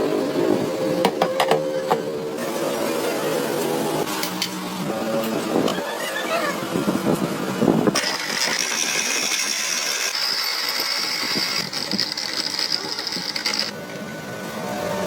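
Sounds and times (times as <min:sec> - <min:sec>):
power tool whining: 0:07.8 - 0:14.1.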